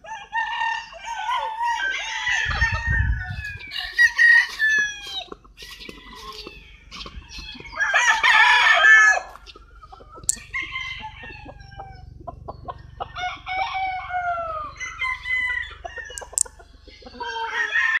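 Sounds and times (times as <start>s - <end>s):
chickens clucking: 0.0s - 18.0s
roosters crowing: 0.0s - 18.0s.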